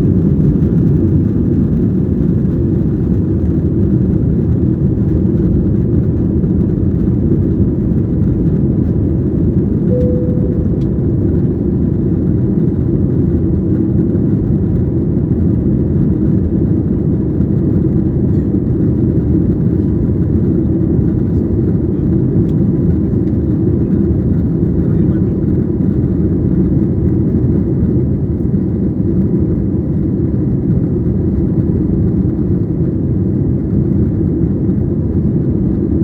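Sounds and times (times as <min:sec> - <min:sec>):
airplane cabin engine rumble: 0:00.0 - 0:36.0
faint tone: 0:09.9 - 0:11.9.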